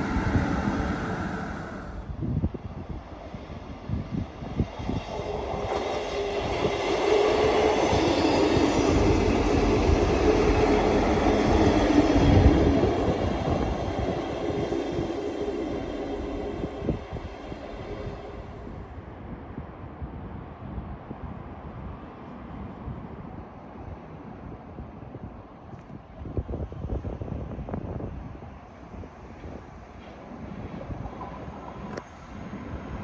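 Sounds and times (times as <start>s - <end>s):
train passing: 0.0s - 22.8s, 28.8s - 33.0s.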